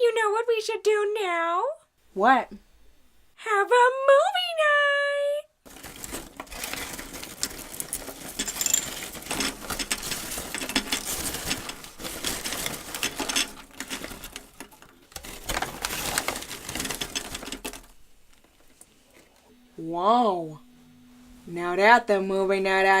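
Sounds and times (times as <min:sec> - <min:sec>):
popcorn popping: 0:05.7 - 0:18.9.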